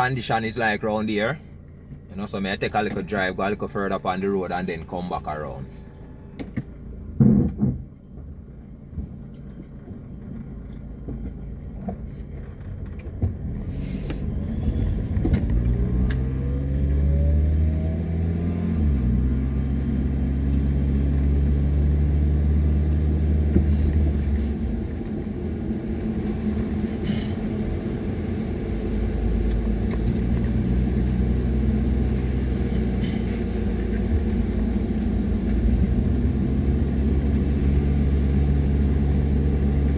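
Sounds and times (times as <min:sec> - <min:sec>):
car engine accelerating: 0:01.1 - 0:39.9
thump: 0:06.4 - 0:07.9.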